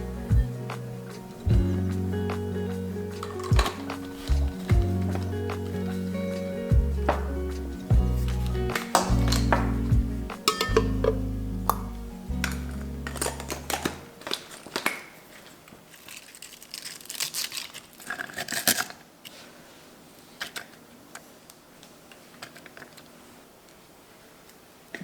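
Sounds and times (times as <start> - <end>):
background music: 0.0 - 14.4
packaging crinkling and rustling: 3.2 - 5.9, 12.4 - 19.5.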